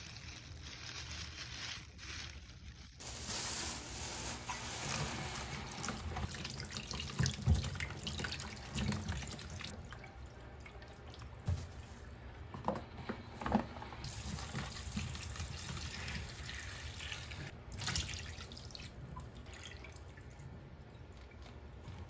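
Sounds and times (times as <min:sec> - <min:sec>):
water running at sink: 0:03.2 - 0:11.6, 0:14.0 - 0:22.0.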